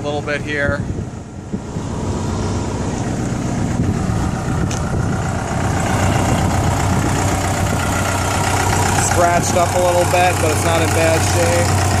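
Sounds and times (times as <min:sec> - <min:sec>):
excavator diesel engine idling: 0:00.9 - 0:12.0.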